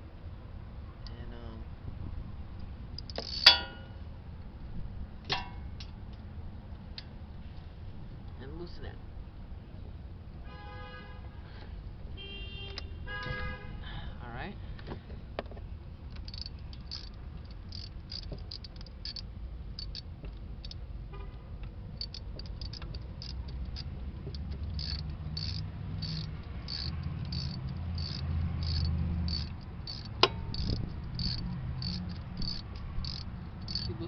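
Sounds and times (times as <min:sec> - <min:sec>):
crickets chirping: 0:03.0 - 0:03.8, 0:16.1 - 0:20.8, 0:21.9 - 0:34.0.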